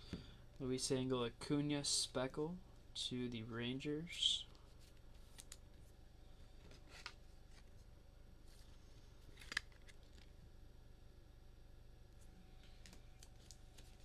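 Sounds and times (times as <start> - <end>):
cards rustling and clicking: 8.5 - 10.4, 12.6 - 14.0.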